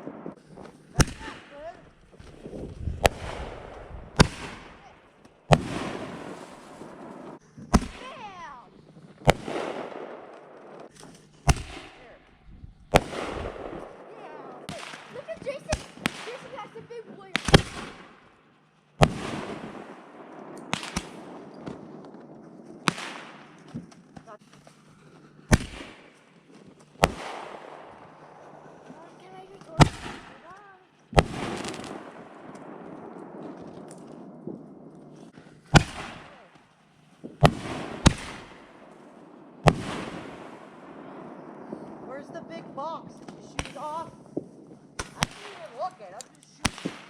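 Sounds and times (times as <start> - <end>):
fireworks crackling hiss: 0.0 - 12.2, 24.3 - 34.2
fireworks bangs: 0.0 - 47.0.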